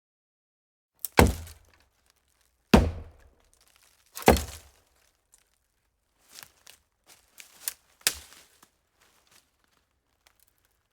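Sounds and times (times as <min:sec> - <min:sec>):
axe chopping hollow tree: 0:01.0 - 0:01.7, 0:02.8 - 0:03.3, 0:04.2 - 0:04.7
wood splintering cracks: 0:01.0 - 0:04.8.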